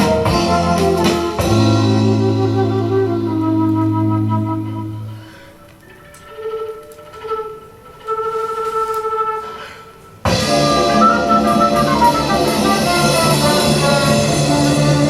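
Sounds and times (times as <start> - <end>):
full-band orchestral music: 0.0 - 15.0.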